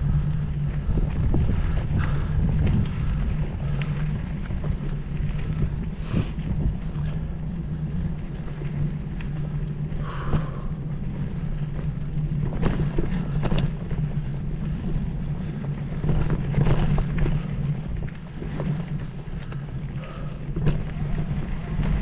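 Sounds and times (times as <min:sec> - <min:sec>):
low engine hum: 0:00.0 - 0:22.0.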